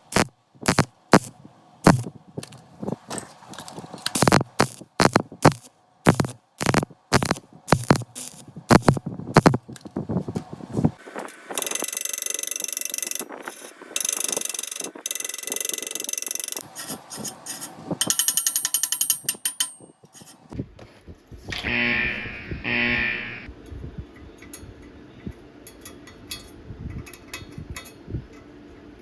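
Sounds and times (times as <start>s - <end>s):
welding arc buzzing and crackling: 0.0s - 2.1s, 4.1s - 9.7s, 21.6s - 23.5s.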